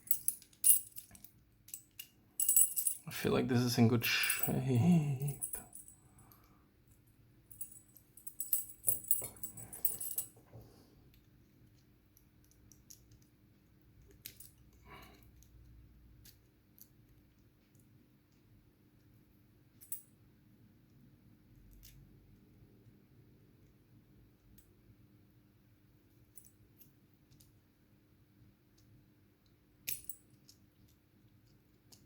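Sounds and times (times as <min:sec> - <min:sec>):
metallic clicking and jingling: 0:00.0 - 0:03.1, 0:04.1 - 0:06.0, 0:07.5 - 0:10.4.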